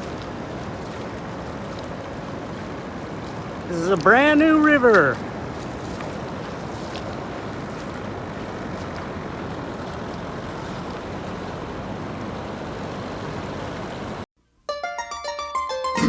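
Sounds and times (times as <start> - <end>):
floodwater rushing: 0.0 - 14.3
plucked music notes: 14.4 - 16.0.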